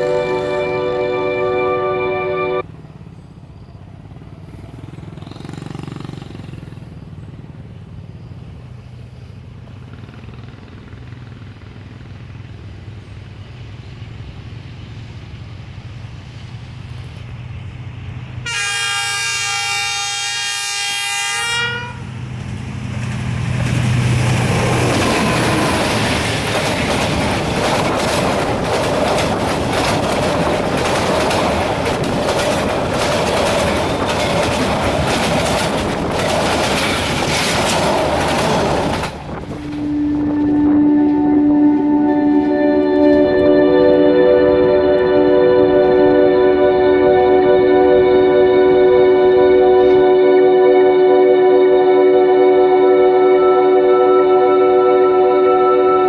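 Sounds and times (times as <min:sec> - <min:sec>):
train horn blast: 0:00.0 - 0:02.7, 0:18.4 - 0:22.2, 0:24.4 - 0:27.0, 0:39.3 - 0:56.0
diesel locomotive rumble: 0:00.0 - 0:56.0
wheels clattering over rail joints: 0:22.4 - 0:39.9.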